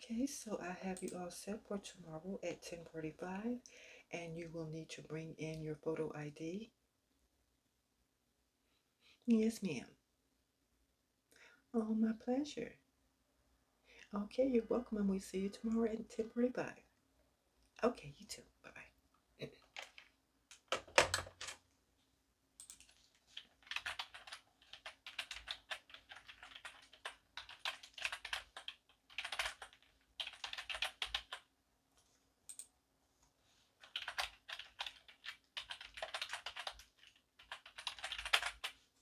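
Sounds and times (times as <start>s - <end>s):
typing on computer keyboard: 19.7s - 21.6s, 22.6s - 31.5s, 33.8s - 38.8s.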